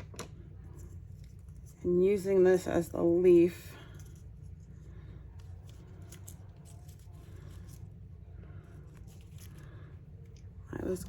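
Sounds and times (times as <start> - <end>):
steady low hum: 0.0 - 11.0
paper crinkling: 3.8 - 10.4.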